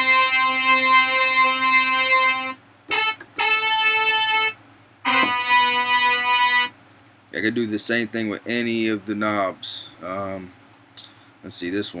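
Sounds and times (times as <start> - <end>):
synthesizer held notes: 0.0 - 6.8.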